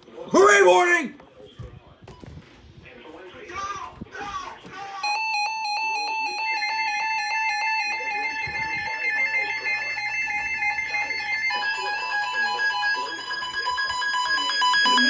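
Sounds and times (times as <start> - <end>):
rapidly pulsing beep: 5.0 - 15.0.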